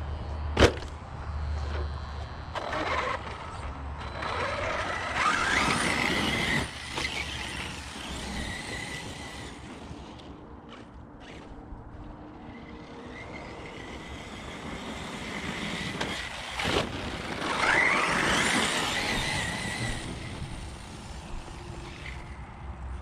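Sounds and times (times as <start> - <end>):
electric motor whining: 2.6 - 10.3, 12.5 - 22.4.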